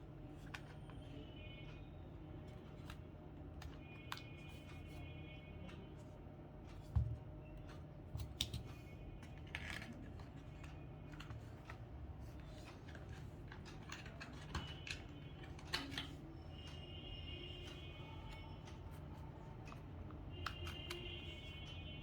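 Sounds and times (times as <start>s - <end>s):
plastic calculator parts clicking: 8.2s - 16.2s, 17.6s - 21.6s.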